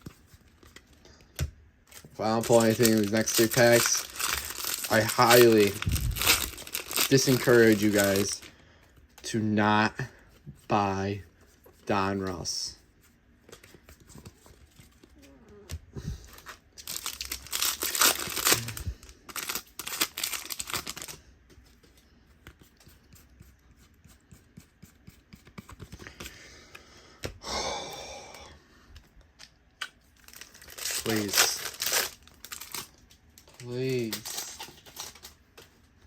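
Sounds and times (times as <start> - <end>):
card pack wrappers tearing: 1.9 - 8.5, 16.3 - 21.2, 30.2 - 35.4.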